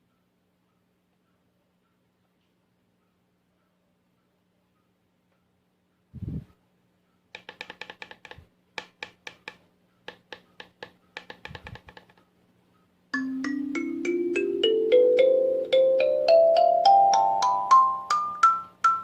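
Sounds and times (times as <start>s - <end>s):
kalimba melody: 13.2s - 19.0s.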